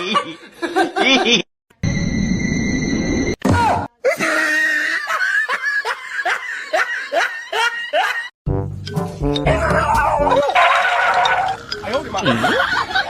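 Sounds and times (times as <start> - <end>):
rhythmic short laughs: 12.0 - 13.0.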